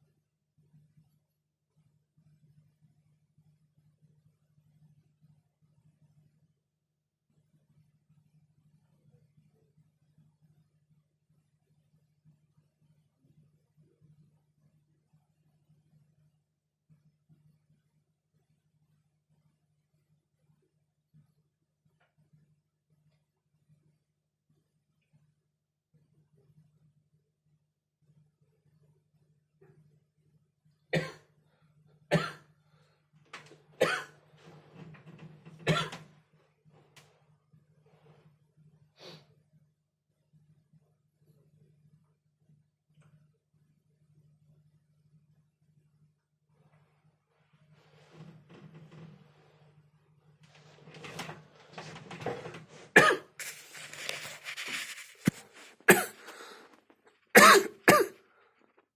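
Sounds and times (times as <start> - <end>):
person coughing hard: 53.0 - 53.4, 55.9 - 56.6, 57.4 - 58.2
person breathing: 53.4 - 56.9
breathy throaty noise: 55.8 - 58.1.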